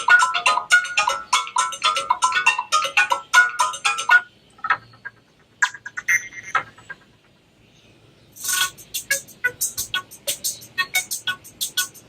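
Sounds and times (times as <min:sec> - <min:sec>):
electronic ringtone melody: 0:00.0 - 0:05.0, 0:08.4 - 0:12.0.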